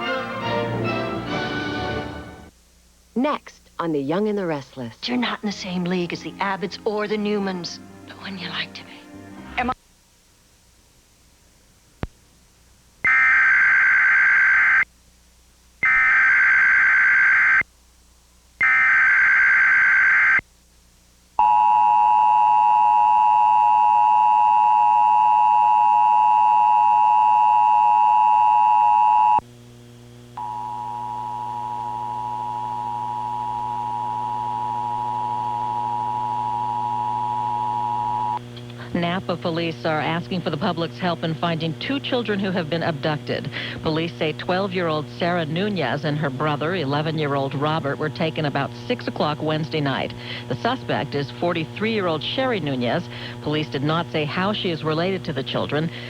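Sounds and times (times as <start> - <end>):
steady low hum: 20.4 - 56.0.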